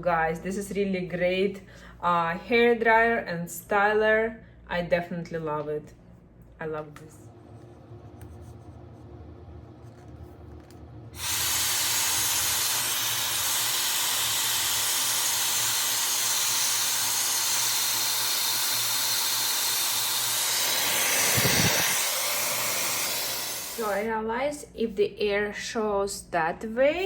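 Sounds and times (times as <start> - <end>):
hair dryer blowing air: 11.2 - 24.1
hair dryer switching on: 11.2 - 24.1.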